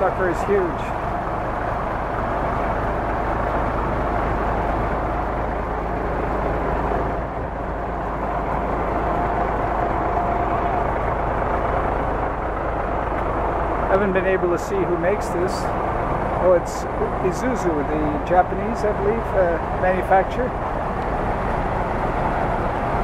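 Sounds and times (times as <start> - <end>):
vehicle engine rumble: 0.0 - 23.0.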